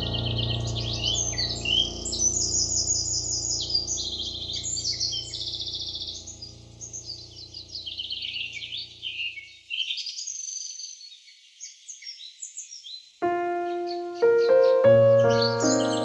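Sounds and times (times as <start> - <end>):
piano playing: 0.0 - 6.0, 13.2 - 16.0
songbirds chirping and trilling: 0.0 - 16.0
soft background music: 13.2 - 16.0.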